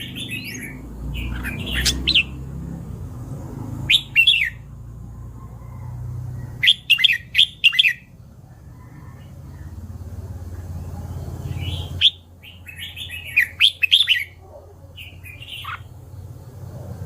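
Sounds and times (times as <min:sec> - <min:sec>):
bird whistling song: 0:00.0 - 0:02.4, 0:03.8 - 0:04.7, 0:06.6 - 0:08.1, 0:11.5 - 0:14.4, 0:15.0 - 0:15.9.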